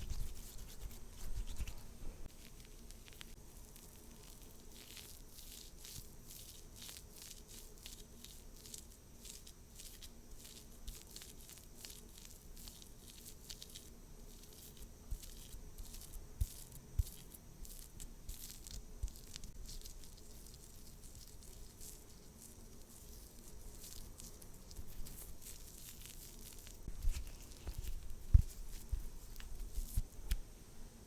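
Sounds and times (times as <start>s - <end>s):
makeup tools crackling and tapping: 0.0s - 30.5s
dull thumps: 26.9s - 30.2s.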